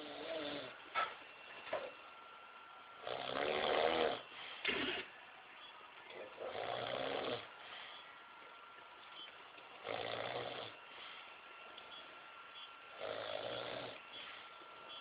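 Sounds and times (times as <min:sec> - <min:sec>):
person snoring: 0:00.0 - 0:00.8, 0:03.0 - 0:05.1, 0:06.2 - 0:07.5, 0:09.8 - 0:10.8, 0:13.0 - 0:14.0.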